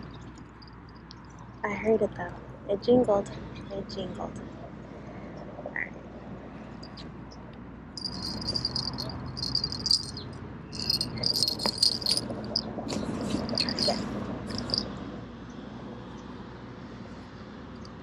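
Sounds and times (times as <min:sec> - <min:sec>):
small bell jingling: 0:08.0 - 0:14.9.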